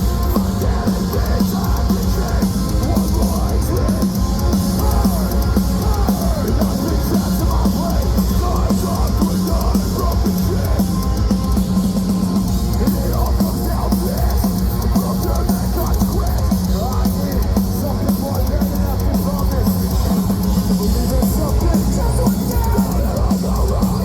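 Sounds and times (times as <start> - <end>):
metal band playing live: 0.0 - 24.0
pounding drum kit: 0.0 - 24.0.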